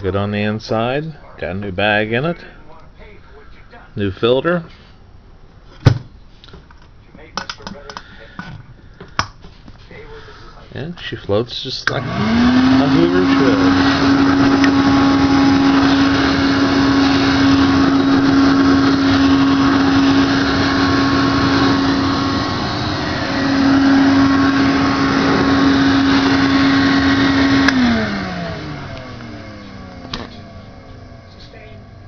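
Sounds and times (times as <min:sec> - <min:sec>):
vacuum cleaner motor humming: 0:11.8 - 0:32.0
motor winding down: 0:11.9 - 0:32.0.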